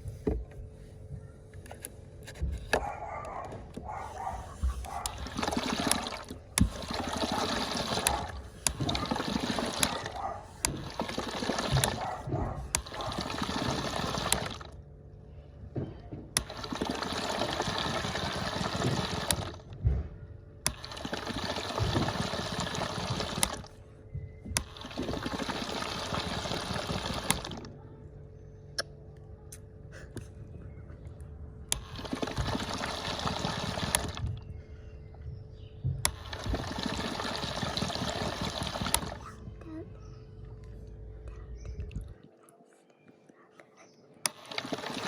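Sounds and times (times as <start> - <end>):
faint steady hum: 0.0 - 45.0
toy washing machine churning water: 2.7 - 14.9, 15.8 - 19.9, 20.6 - 23.8, 24.4 - 27.8, 31.7 - 34.6, 36.0 - 39.8, 44.2 - 45.0.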